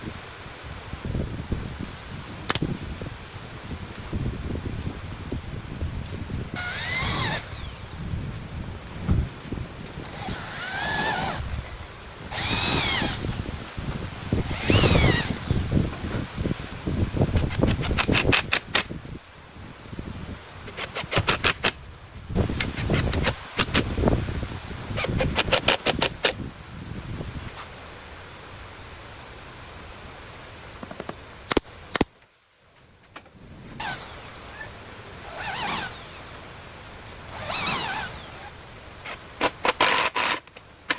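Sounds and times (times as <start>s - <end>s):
power tool whining: 6.1s - 8.0s, 10.0s - 13.8s, 14.4s - 15.9s, 33.8s - 36.4s, 37.3s - 38.6s
rasping scrape on wood: 6.6s - 7.9s, 10.1s - 13.6s.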